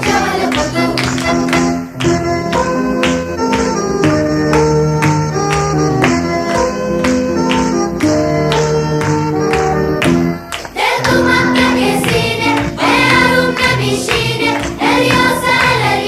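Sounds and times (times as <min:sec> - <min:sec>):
singing voices: 0:00.0 - 0:01.5, 0:10.7 - 0:16.0
instrumental music: 0:00.0 - 0:16.0.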